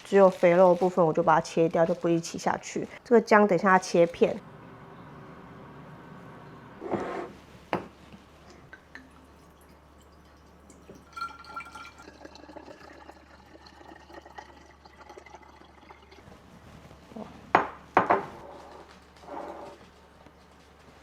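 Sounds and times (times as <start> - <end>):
cookware clinking and ringing: 10.9 - 12.0.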